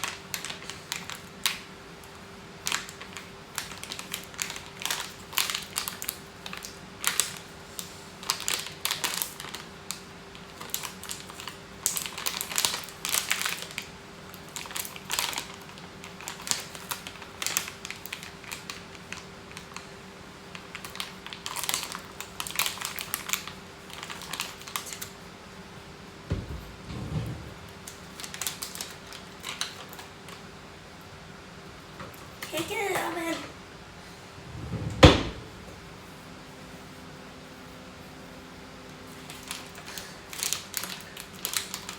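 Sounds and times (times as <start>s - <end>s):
clicks taps and crinkling of objects: 0.0s - 25.2s, 27.8s - 30.5s, 39.2s - 41.9s.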